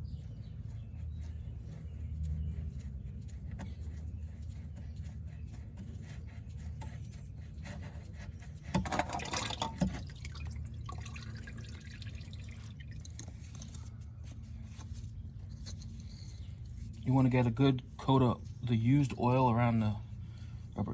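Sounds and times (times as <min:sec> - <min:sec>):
oil dripping into a pan: 0:08.8 - 0:13.7.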